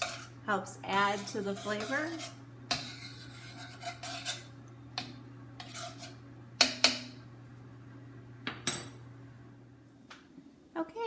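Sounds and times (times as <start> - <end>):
utensil scraping a pan: 0.0 - 4.5, 5.6 - 7.0
steady low hum: 0.0 - 11.0.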